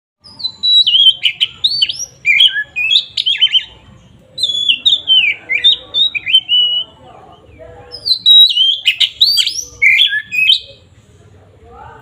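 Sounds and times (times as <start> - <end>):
bird singing whistled phrases: 0.2 - 3.7, 4.4 - 7.0, 7.9 - 10.8.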